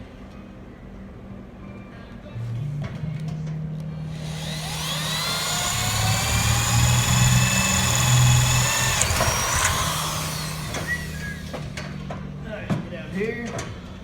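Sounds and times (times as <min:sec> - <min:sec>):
power drill drilling: 0:04.1 - 0:12.0.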